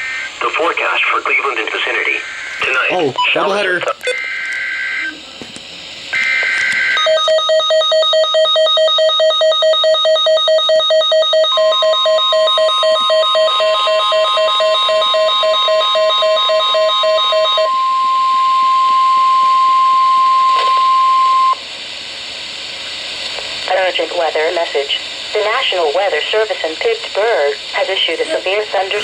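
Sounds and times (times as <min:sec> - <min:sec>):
radio hiss: 0:00.0 - 0:07.0, 0:21.6 - 0:29.0
rapidly pulsing beep: 0:06.2 - 0:17.9.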